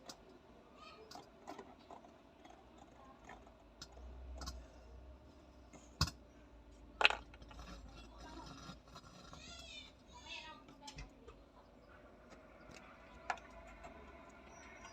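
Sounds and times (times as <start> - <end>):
tools and parts clicking: 7.0 - 7.8.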